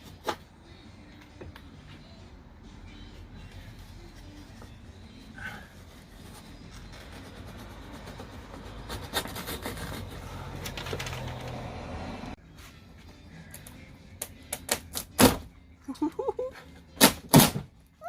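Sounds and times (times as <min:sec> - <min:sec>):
material scraped by hand: 0:05.5 - 0:10.6.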